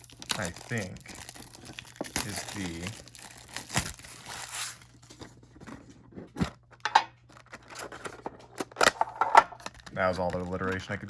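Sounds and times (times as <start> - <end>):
plastic wrapping crinkling: 0.0 - 5.2, 9.6 - 11.0.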